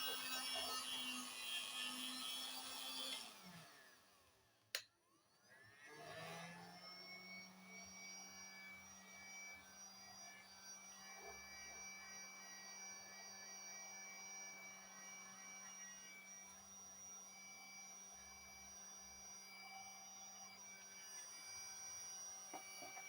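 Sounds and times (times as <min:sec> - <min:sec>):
heat gun motor whining: 0:06.4 - 0:23.0.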